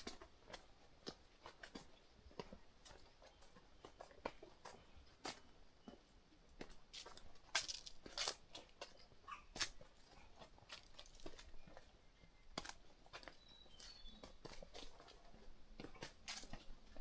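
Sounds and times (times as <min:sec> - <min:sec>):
footsteps crunching on a trail: 0:06.6 - 0:09.0, 0:09.6 - 0:11.9, 0:12.5 - 0:17.0.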